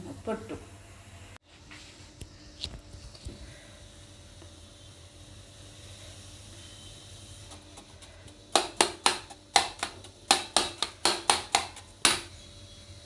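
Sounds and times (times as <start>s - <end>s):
knife tapping on board: 8.5s - 12.3s.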